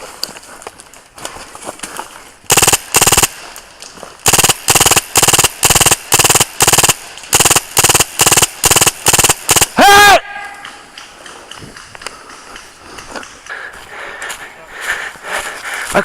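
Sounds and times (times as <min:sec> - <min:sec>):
airsoft rifle firing bursts: 0:02.5 - 0:03.6, 0:04.2 - 0:10.0.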